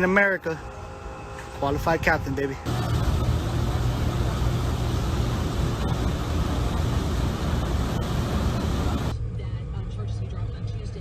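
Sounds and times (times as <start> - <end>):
low engine rumble: 0.6 - 11.0
loud rushing noise: 2.6 - 9.1.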